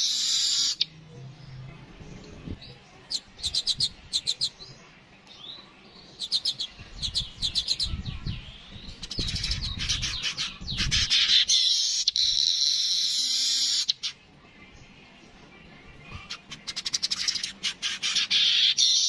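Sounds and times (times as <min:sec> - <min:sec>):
bird chirping and chattering: 0:00.0 - 0:01.0, 0:02.2 - 0:14.3, 0:15.8 - 0:19.0.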